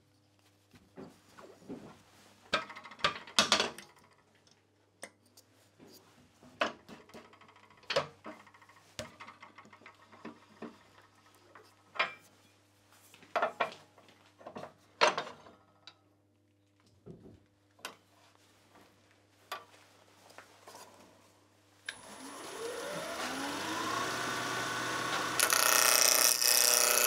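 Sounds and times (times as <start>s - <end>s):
wood lathe humming: 21.9s - 27.0s
turning tool scraping wood: 24.0s - 27.0s.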